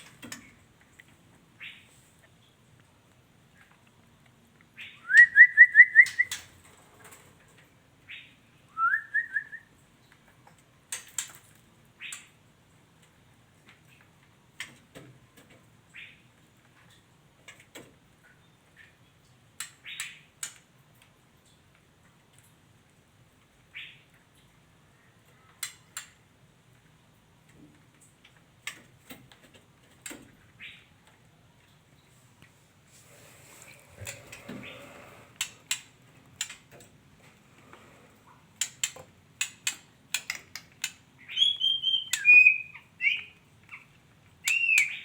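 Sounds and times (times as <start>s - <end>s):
bird chips and clicks: 4.8s - 6.5s, 38.6s - 45.0s.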